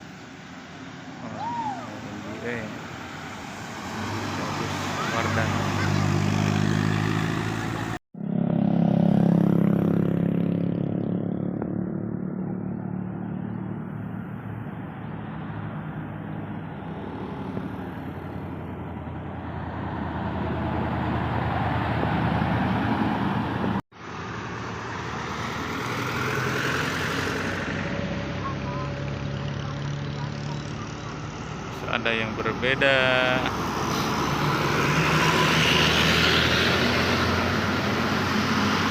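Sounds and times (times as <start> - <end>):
bus engine drone: 0.0 - 38.9
road noise: 0.0 - 38.9.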